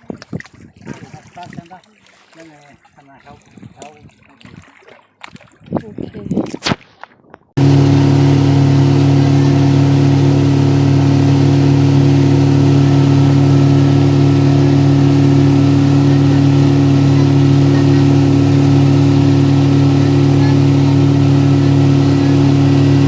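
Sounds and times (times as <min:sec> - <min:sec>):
engine humming steadily: 0:07.6 - 0:23.0.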